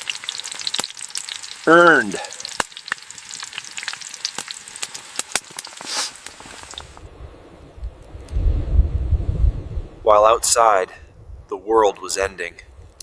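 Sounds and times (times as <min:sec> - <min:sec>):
food sizzling and crackling: 0:00.0 - 0:07.1.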